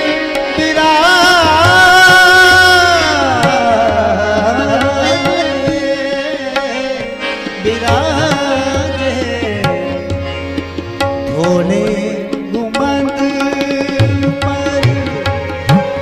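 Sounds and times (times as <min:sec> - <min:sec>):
harmonium notes: 0:00.0 - 0:16.0
tabla rhythm: 0:00.0 - 0:16.0.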